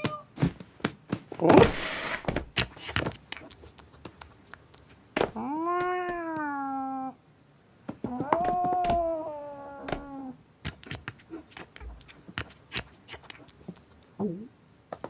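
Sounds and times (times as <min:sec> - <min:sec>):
cat meowing: 0:00.0 - 0:00.3, 0:05.4 - 0:07.2, 0:08.0 - 0:10.4.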